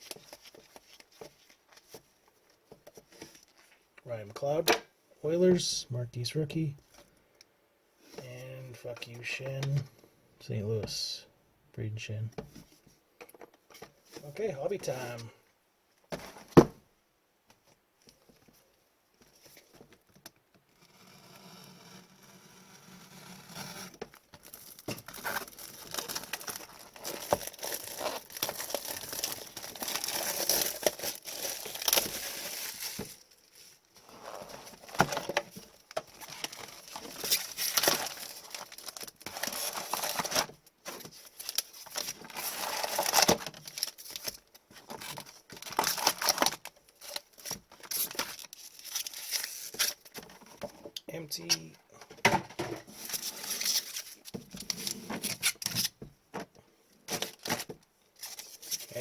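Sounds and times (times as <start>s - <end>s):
plastic wrap tearing and crinkling: 23.6s - 50.4s, 52.9s - 56.0s, 57.1s - 59.0s.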